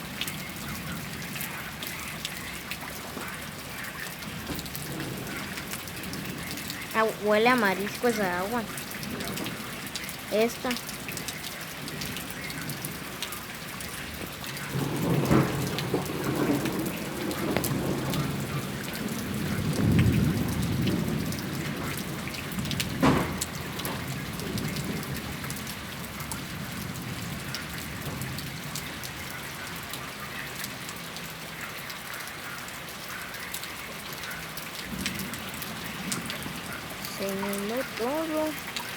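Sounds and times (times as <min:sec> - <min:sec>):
heavy rain: 0:00.0 - 0:38.9
low rolling thunder: 0:04.2 - 0:29.9
sharp thunder crack: 0:14.7 - 0:25.4.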